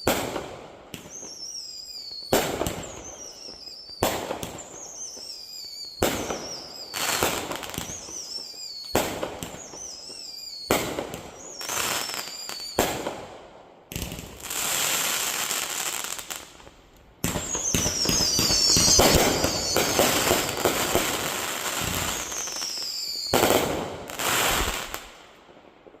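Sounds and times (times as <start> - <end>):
firework shots: 0.0 - 1.4, 2.3 - 3.3, 6.0 - 16.5, 17.2 - 25.6
falling firework whistle: 0.0 - 13.2, 17.2 - 25.1
rapid firework pops: 16.4 - 22.5.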